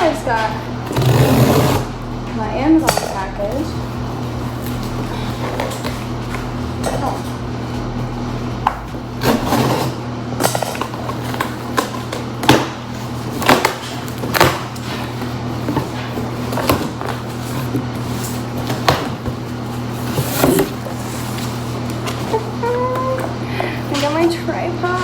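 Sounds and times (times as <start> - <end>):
steady low hum: 0.0 - 13.4.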